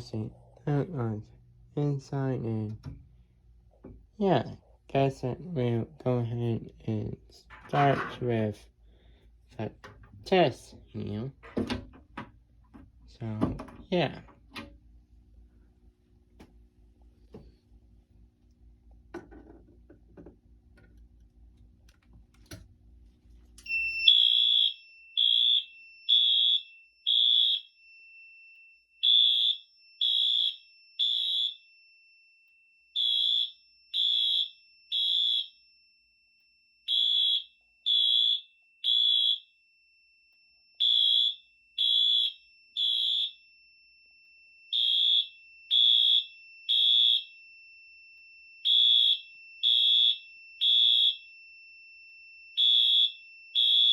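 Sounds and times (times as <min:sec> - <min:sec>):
fire alarm beeps: 0:23.6 - 0:53.9.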